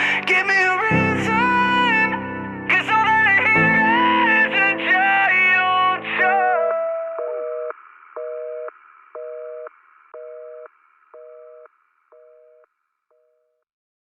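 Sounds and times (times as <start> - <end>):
telephone busy signal beeping: 7.2 - 13.5.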